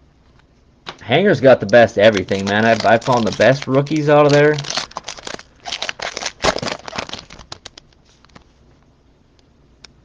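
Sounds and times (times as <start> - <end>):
plastic card packs rustling: 0.9 - 8.6.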